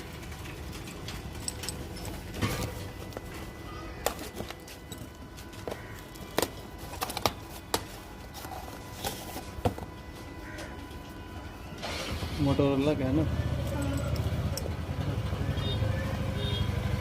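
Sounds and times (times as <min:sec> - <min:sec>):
phone box packaging clicks and taps: 0:05.4 - 0:10.0.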